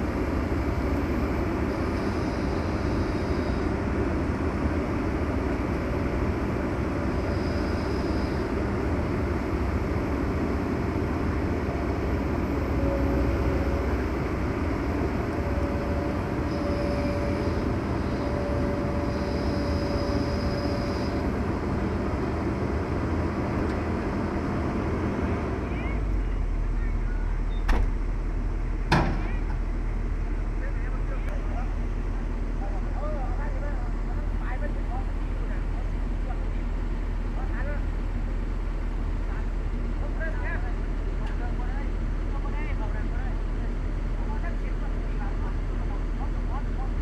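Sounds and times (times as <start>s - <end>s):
diesel excavator engine running: 0.0s - 47.0s
faint high whine: 1.7s - 3.8s, 15.1s - 21.4s.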